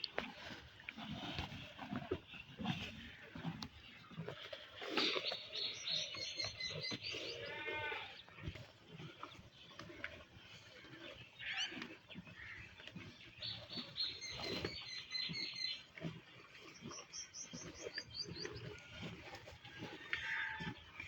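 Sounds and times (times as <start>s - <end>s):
buffalo chewing grass: 0.0s - 21.0s
small birds chirping: 3.7s - 19.2s.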